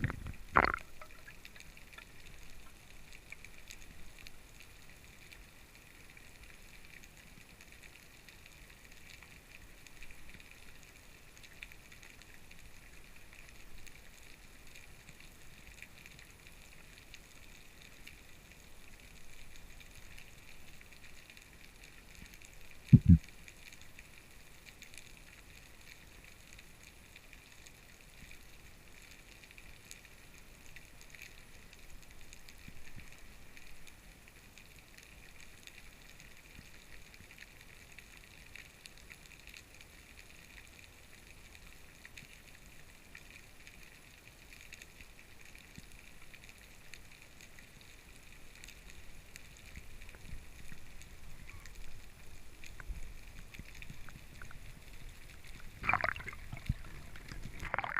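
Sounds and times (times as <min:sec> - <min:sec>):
low water rumble: 0:00.0 - 0:24.6, 0:47.6 - 0:57.9
small clicks and crackles: 0:00.0 - 0:57.9.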